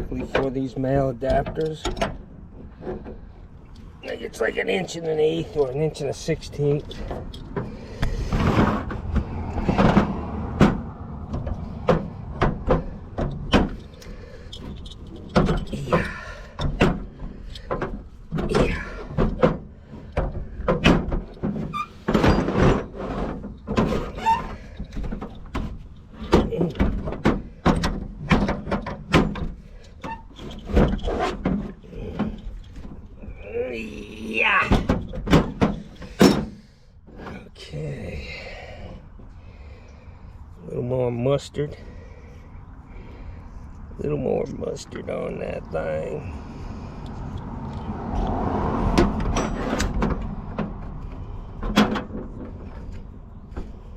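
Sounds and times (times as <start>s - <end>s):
metal knocks and clanks: 0.0s - 3.3s, 5.6s - 33.3s, 34.5s - 37.5s, 48.7s - 53.9s.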